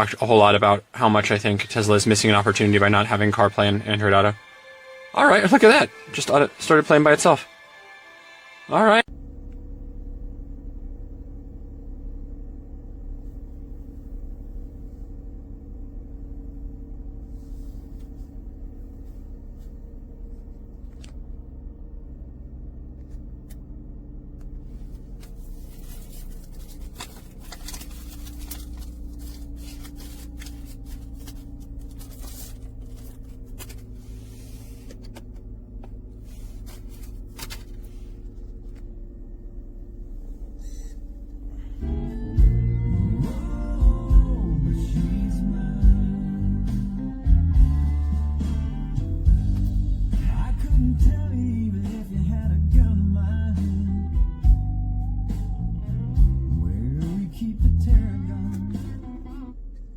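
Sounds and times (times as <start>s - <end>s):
scraping noises: 24.6s - 35.4s
music on car audio: 41.8s - 59.6s.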